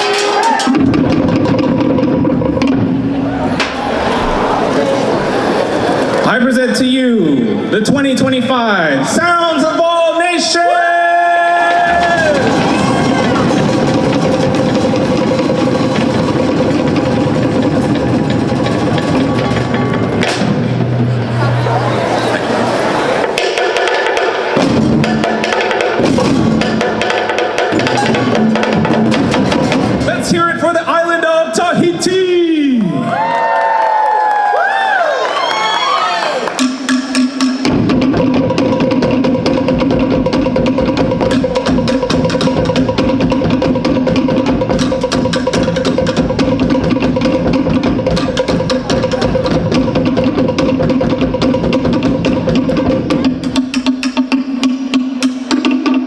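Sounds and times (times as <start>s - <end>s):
deep drums: 0.0s - 6.3s, 11.6s - 30.7s, 36.6s - 56.0s
deep booming drum: 11.7s - 21.7s, 24.6s - 30.6s
low hum: 11.8s - 23.3s.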